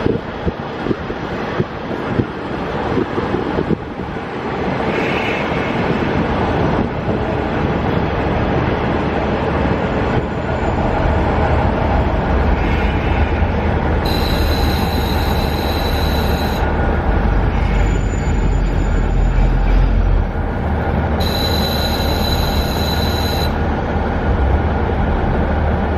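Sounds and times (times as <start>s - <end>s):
wind and train running noise: 0.0s - 25.9s
diesel engine drone: 3.8s - 25.9s
high-pitched tone: 14.0s - 16.7s, 21.2s - 23.8s.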